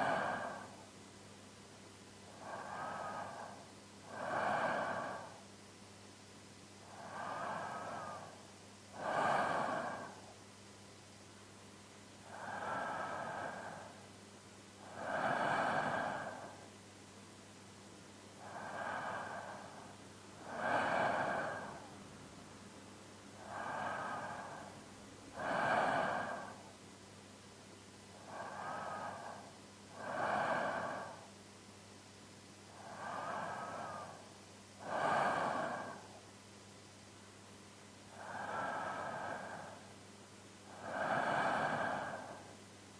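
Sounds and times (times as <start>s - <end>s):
man's deep sleep breathing: 0.0s - 0.9s, 2.2s - 5.5s, 6.8s - 10.4s, 12.2s - 14.0s, 14.8s - 16.7s, 18.4s - 22.2s, 23.4s - 26.8s, 28.1s - 31.4s, 32.7s - 36.3s, 38.1s - 40.0s, 40.6s - 42.6s.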